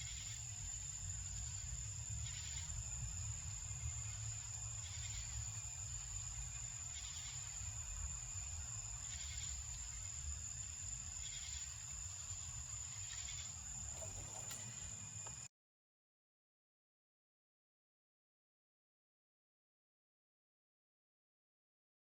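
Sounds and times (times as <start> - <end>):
insects buzzing: 0.0 - 15.5
pulsing insect call: 0.0 - 15.5.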